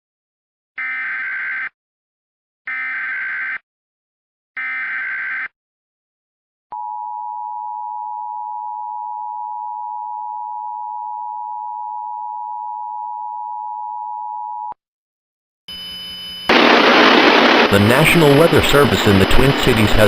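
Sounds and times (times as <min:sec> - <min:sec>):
two-tone alert alarm: 0:00.8 - 0:01.8, 0:02.7 - 0:03.6, 0:04.6 - 0:05.5, 0:15.7 - 0:20.0.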